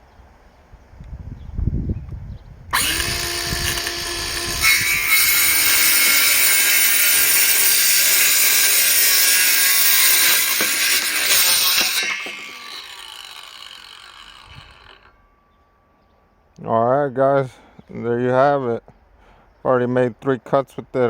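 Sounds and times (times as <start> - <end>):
circular saw cutting wood: 2.7 - 15.2.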